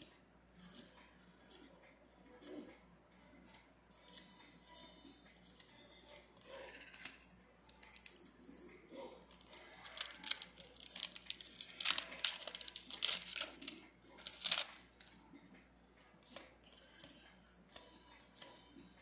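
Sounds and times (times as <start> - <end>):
foil wrapper tearing and crinkling: 7.7 - 8.3, 9.3 - 14.9.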